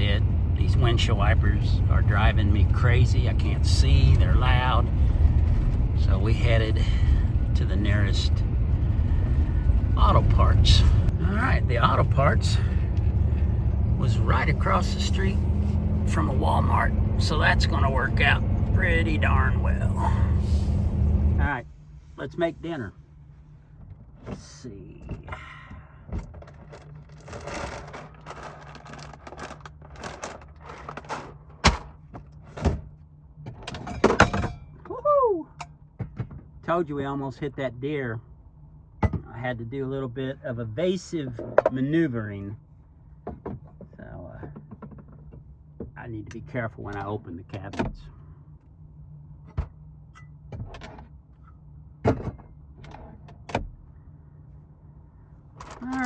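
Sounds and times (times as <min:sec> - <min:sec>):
steady low hum: 0:00.0 - 0:56.0
rustling and light clattering: 0:23.2 - 0:34.8.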